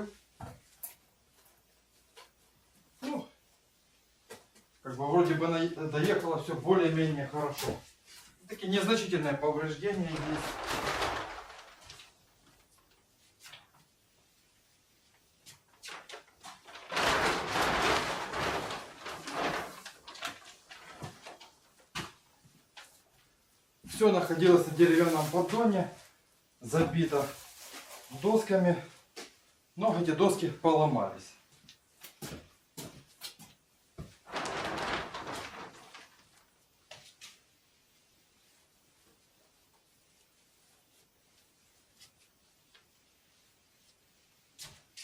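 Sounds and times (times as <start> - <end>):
packing materials rustling and scraping: 7.2 - 13.8, 15.5 - 23.0, 23.9 - 29.2, 34.1 - 37.5.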